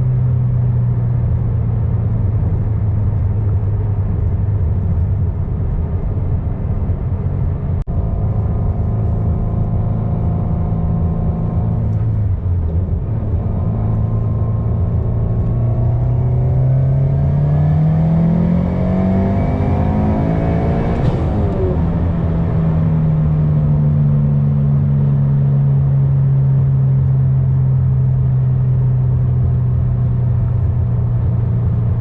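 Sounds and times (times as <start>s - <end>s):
turbocharged car engine revving: 8.1s - 25.2s.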